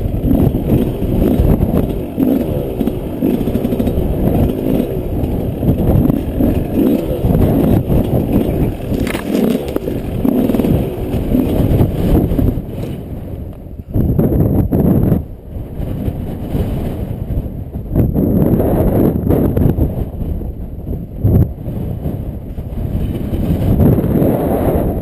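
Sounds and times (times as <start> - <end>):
motorcycle engine revving: 0.0 - 13.4.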